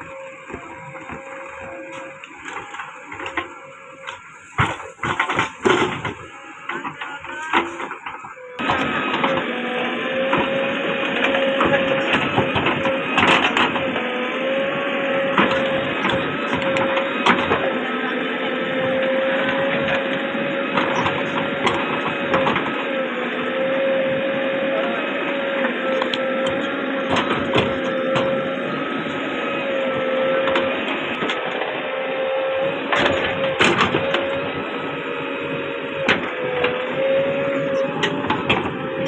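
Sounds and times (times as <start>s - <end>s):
backhoe engine running under load: 0.0s - 39.0s
steady whine: 0.0s - 39.0s
digging knocks and clanks: 0.5s - 9.6s, 25.8s - 28.6s.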